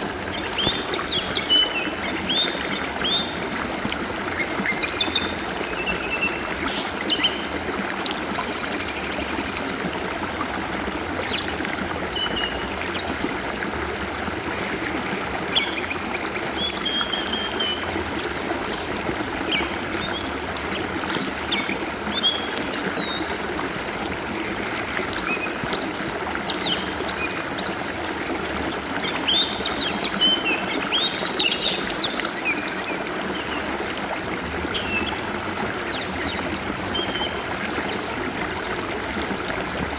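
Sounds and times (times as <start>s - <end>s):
bird singing: 0.0s - 3.4s, 11.3s - 13.0s, 15.5s - 16.0s, 16.6s - 23.4s, 25.2s - 33.7s, 34.7s - 35.2s
stream water trickling: 0.0s - 39.9s.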